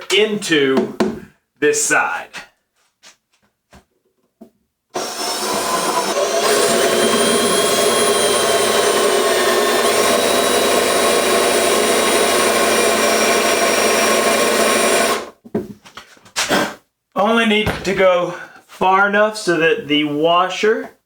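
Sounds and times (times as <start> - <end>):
power drill boring into wood: 5.0 - 15.3.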